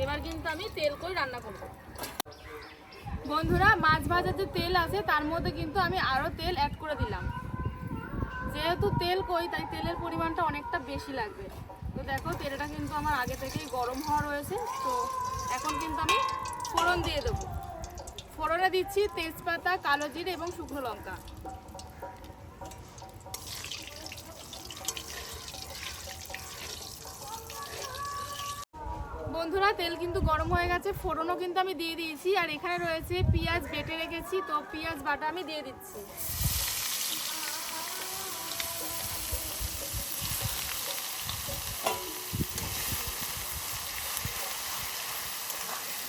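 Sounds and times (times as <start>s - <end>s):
spices sizzling in hot oil: 12.2s - 28.6s, 36.2s - 46.0s.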